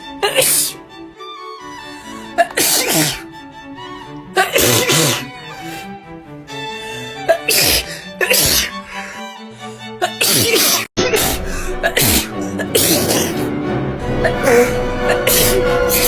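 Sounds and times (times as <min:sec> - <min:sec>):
background music: 0:00.0 - 0:16.0
person sneezing: 0:00.2 - 0:00.8, 0:02.4 - 0:03.2, 0:04.4 - 0:05.9, 0:07.3 - 0:08.8, 0:10.0 - 0:13.5, 0:14.2 - 0:16.0.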